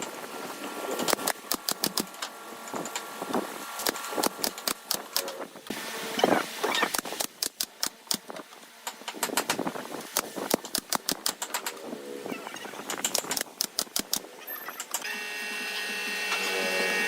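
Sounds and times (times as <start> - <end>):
power tool whining: 14.8 - 17.0.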